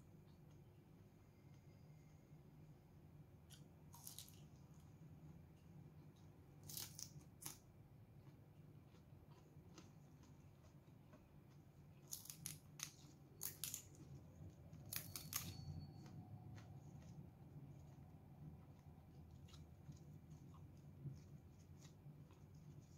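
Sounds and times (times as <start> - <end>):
crunching leafy greens: 6.6 - 7.6, 12.0 - 14.1.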